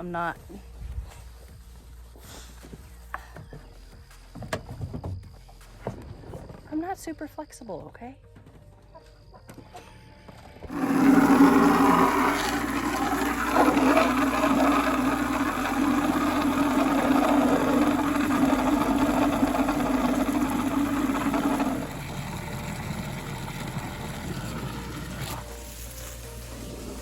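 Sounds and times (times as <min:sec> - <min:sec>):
motor humming: 0:10.7 - 0:27.0.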